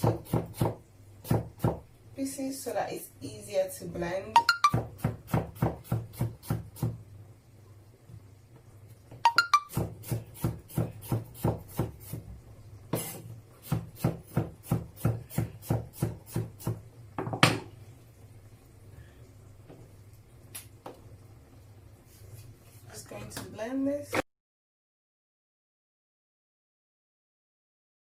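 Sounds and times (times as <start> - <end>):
knife chopping on cutting board: 0.0 - 1.8, 4.7 - 7.0, 9.7 - 12.2, 12.9 - 17.7.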